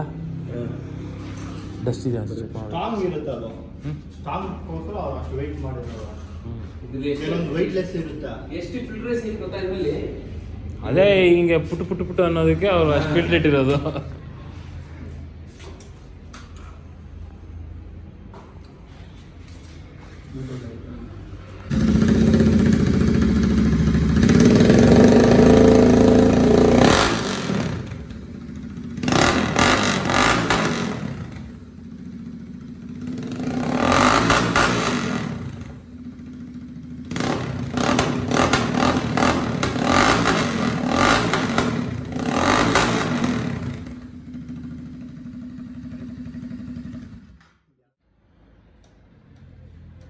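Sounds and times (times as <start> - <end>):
motorcycle engine revving: 0.0 - 5.2, 21.2 - 47.6.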